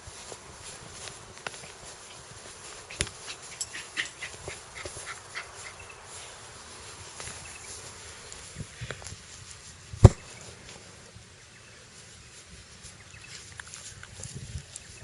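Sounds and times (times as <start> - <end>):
faint dog sounds: 2.0 - 6.3.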